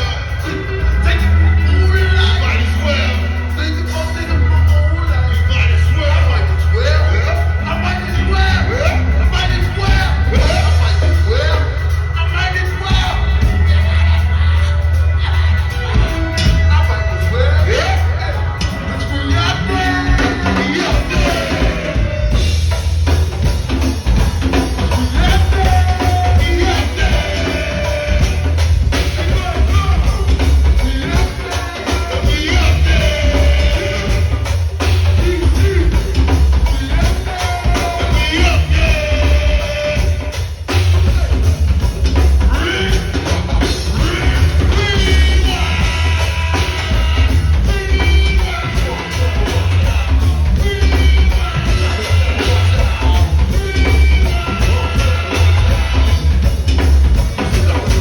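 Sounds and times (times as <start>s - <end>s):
bass line: 0.0s - 58.0s
drum kit beat: 0.0s - 58.0s
person singing: 24.4s - 41.8s, 42.4s - 58.0s.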